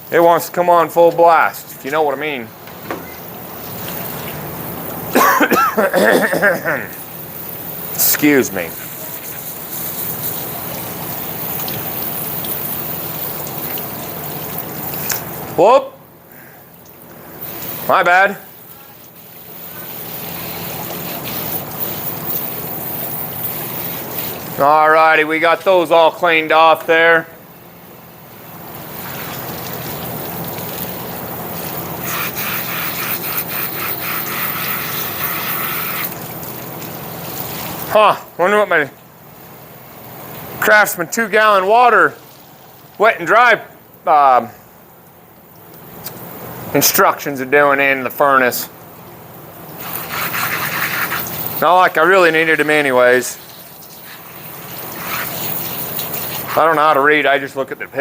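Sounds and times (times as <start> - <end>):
water spraying from hose nozzle: 3.2 - 15.6, 17.2 - 24.8, 28.3 - 38.7, 39.3 - 43.0, 49.5 - 57.0
rough rubbing and scraping: 49.8 - 51.7.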